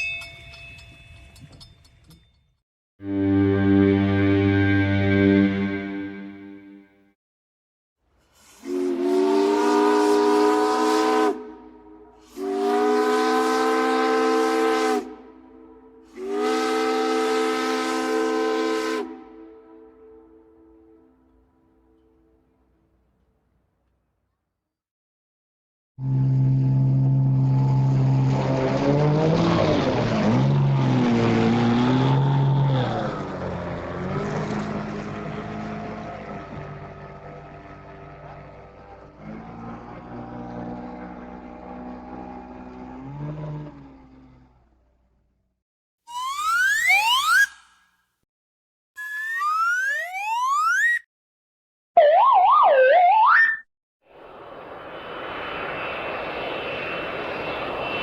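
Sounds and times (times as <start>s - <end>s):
steam whistle blasts: 8.4s - 21.1s, 26.0s - 28.0s
motor engine revving: 26.4s - 45.0s.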